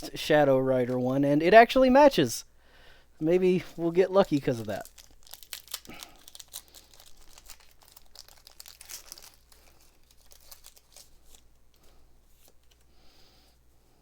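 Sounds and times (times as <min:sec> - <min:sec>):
foil wrapper tearing and crinkling: 0:04.5 - 0:12.8.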